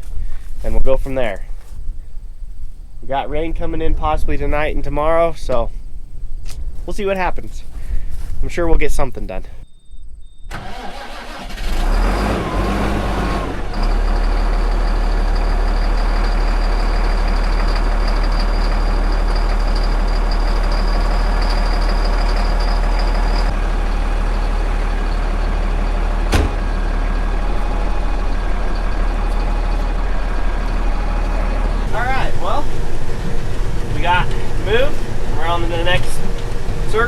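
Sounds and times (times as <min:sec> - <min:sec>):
tractor diesel engine running: 0:10.5 - 0:37.0.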